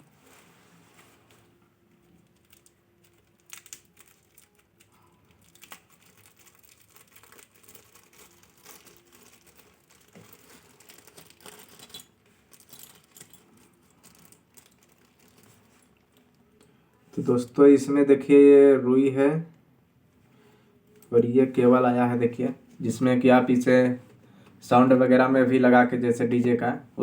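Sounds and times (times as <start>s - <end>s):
packaging crinkling and rustling: 0.0s - 16.4s.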